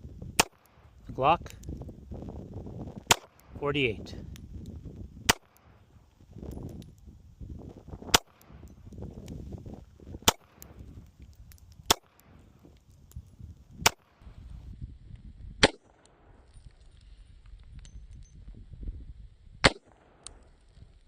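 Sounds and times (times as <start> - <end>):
pistol shots: 0.4 - 0.8, 3.1 - 3.5, 5.3 - 5.8, 8.1 - 8.6, 10.2 - 10.7, 11.8 - 12.4.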